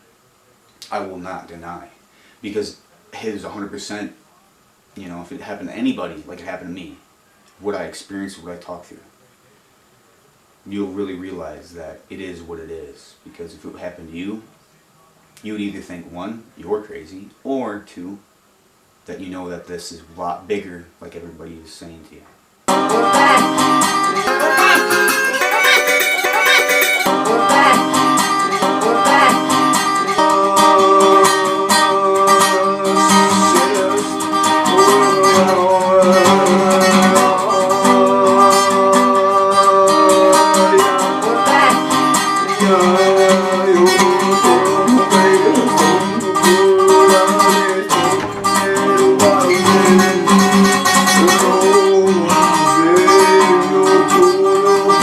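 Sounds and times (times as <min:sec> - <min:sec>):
plucked guitar music: 0:22.7 - 0:55.0.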